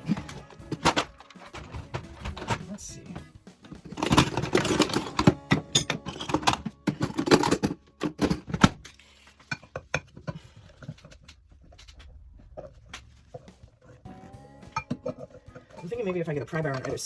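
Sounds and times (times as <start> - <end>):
metal tools clattering: 3.8 - 12.1.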